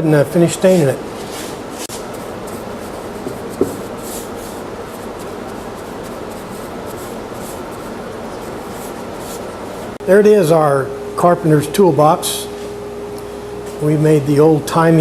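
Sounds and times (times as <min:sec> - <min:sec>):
stain rubbed onto wood: 0:01.2 - 0:10.0.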